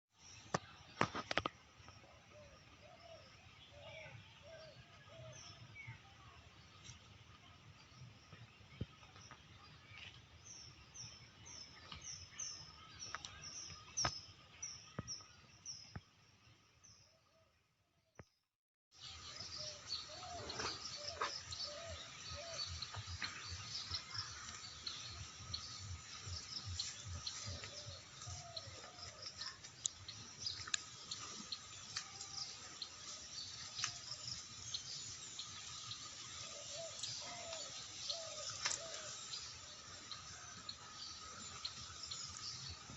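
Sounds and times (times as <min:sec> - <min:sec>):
birds calling low arched notes: 0:19.0 - 0:42.9
faint high bird chirps: 0:19.0 - 0:42.9.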